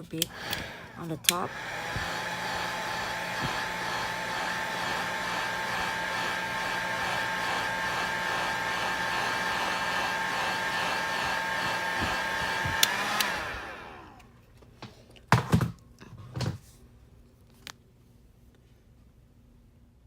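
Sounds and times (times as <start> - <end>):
heat gun blowing: 0.0 - 14.2.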